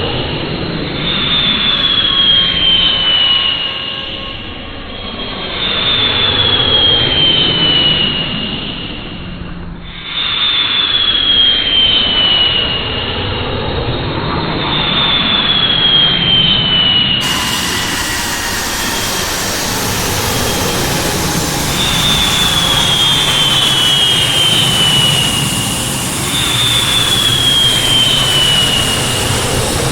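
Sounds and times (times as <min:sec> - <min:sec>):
jet engines roaring with whine: 0:17.2 - 0:29.9.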